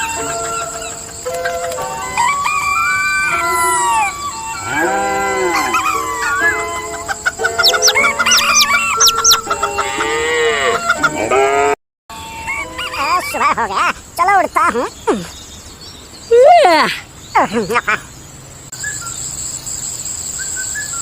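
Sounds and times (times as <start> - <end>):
background music: 0.0 - 11.4
chickens clucking: 0.0 - 11.6, 12.2 - 13.4
rooster crowing: 1.9 - 12.9.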